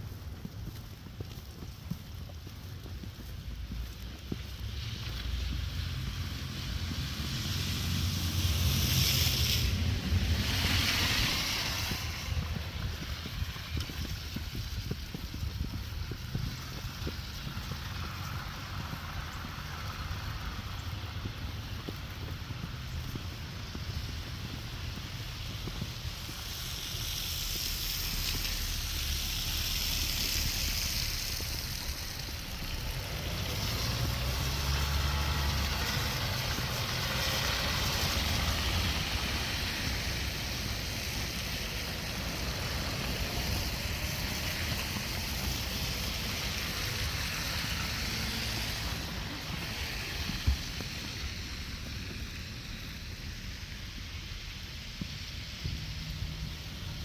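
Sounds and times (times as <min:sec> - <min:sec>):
wind buffeting microphone: 0:05.4 - 0:29.0.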